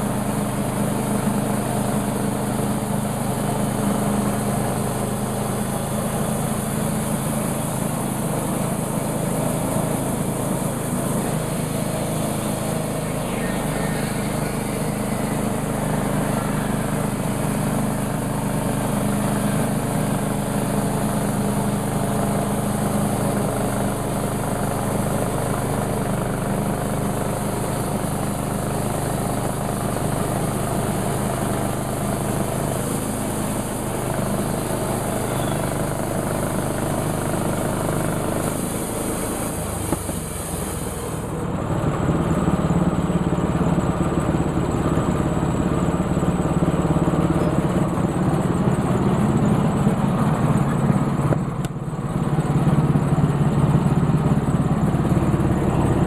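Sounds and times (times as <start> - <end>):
sawmill engine running: 0.0 - 56.0.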